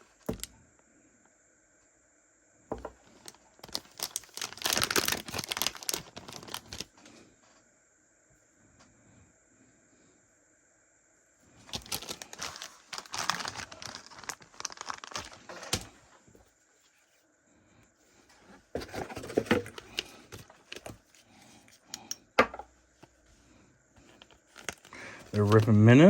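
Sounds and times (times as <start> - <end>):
plastic packaging crinkling and tearing: 3.2 - 6.9, 11.6 - 16.0, 24.1 - 25.9.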